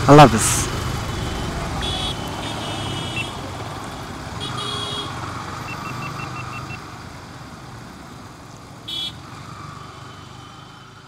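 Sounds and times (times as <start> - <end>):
road traffic engine hum: 0.0 - 11.0
vehicle horn honk: 1.2 - 3.4, 4.4 - 5.2, 8.9 - 9.2.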